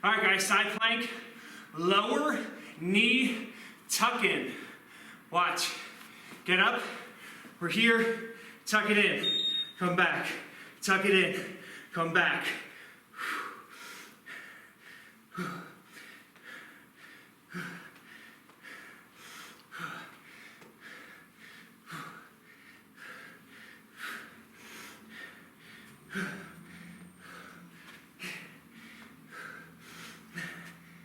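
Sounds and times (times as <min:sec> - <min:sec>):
man breathing hard: 0:01.0 - 0:08.7, 0:10.2 - 0:10.8, 0:11.4 - 0:31.0.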